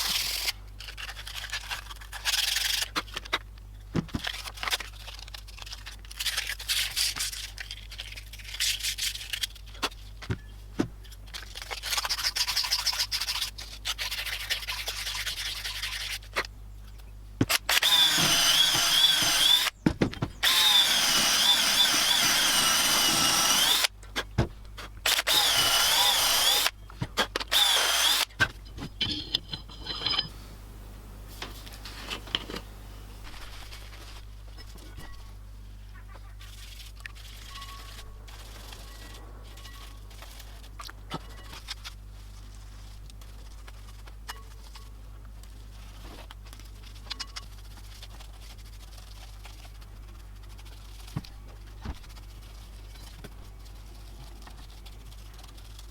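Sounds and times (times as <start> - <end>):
scraping and rubbing by hand: 11.4 - 16.4, 27.5 - 30.4, 31.3 - 55.9
power tool whining: 17.5 - 19.7, 20.4 - 23.9, 25.1 - 26.7, 27.5 - 28.3.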